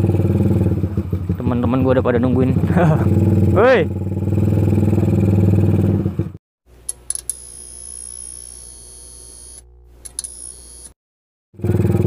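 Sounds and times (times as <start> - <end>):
motorcycle engine running: 0.0 - 6.4, 11.6 - 12.0
sharp clicks: 6.9 - 7.4, 9.5 - 11.0.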